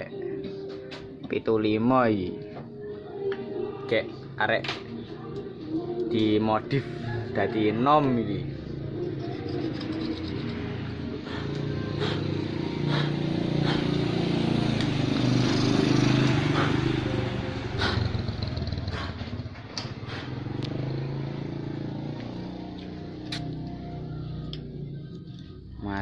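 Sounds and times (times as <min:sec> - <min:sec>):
small motorcycle engine running: 0:08.3 - 0:25.2.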